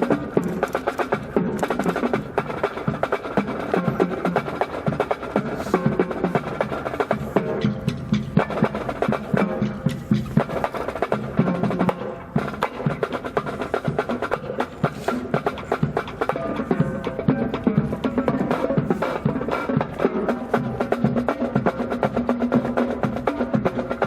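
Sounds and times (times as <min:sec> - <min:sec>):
marching band playing: 0:00.0 - 0:24.0
snare drum strokes: 0:00.0 - 0:24.0.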